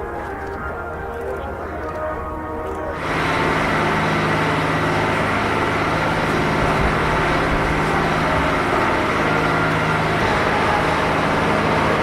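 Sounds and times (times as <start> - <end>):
jet engines running: 0.0 - 12.0.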